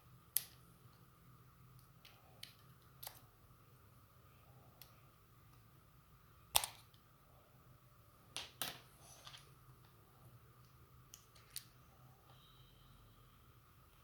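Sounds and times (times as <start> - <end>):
faint steady hum: 0.0 - 14.0
small objects clicking and tapping: 0.3 - 1.0, 1.7 - 3.3, 6.5 - 7.0, 10.6 - 11.8.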